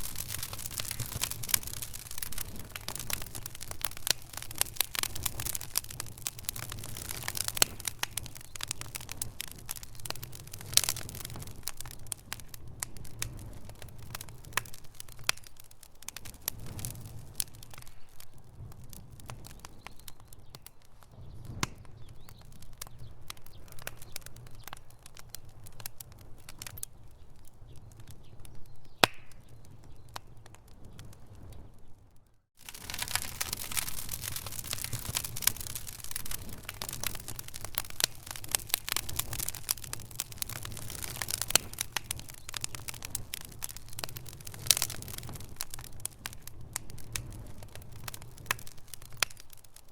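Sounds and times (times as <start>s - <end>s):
campfire wood crackling: 0.0s - 49.9s.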